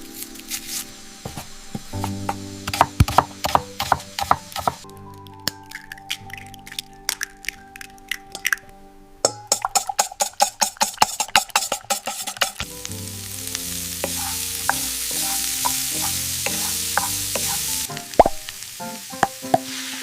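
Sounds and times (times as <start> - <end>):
light music: 0.0 - 10.0, 12.6 - 20.0
utensil clicking against bowl: 9.3 - 12.6
food sizzling in frying pan: 11.0 - 20.0.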